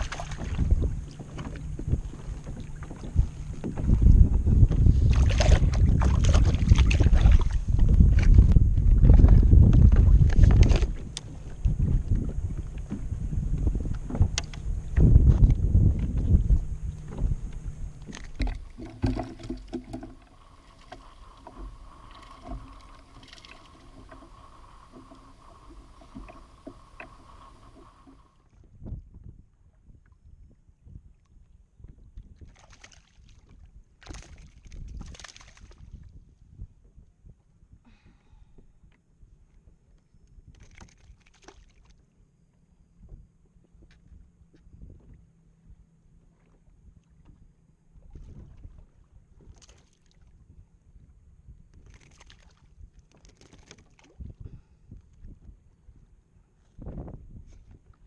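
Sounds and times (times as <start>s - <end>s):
knocks and splashes against kayak: 0.0s - 29.3s
wind buffeting microphone: 0.0s - 32.6s, 54.1s - 58.0s.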